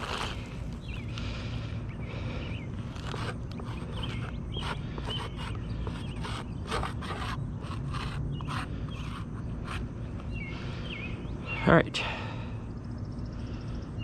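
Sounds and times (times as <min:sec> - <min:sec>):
scraping on roof shingles: 0:00.0 - 0:00.7.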